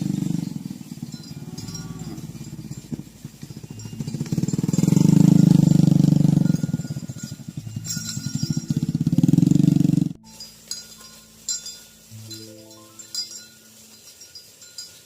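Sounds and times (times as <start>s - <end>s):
small engine running: 0.0s - 10.2s.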